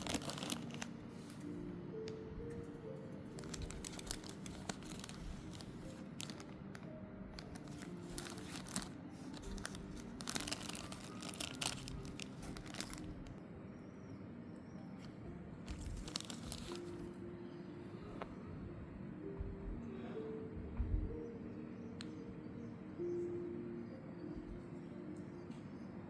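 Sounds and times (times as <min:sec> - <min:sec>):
packaging crinkling and tearing: 0:00.0 - 0:01.4, 0:03.3 - 0:13.4, 0:15.7 - 0:17.0.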